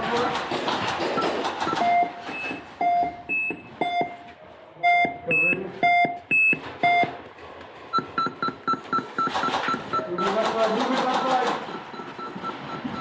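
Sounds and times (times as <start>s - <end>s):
electronic beeps: 1.1s - 7.2s, 7.9s - 10.6s, 11.2s - 13.0s.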